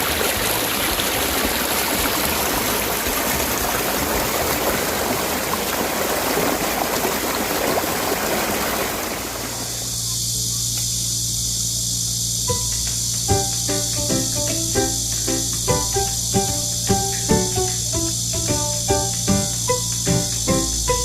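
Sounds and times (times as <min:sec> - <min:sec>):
water rushing over rocks: 0:00.0 - 0:09.5.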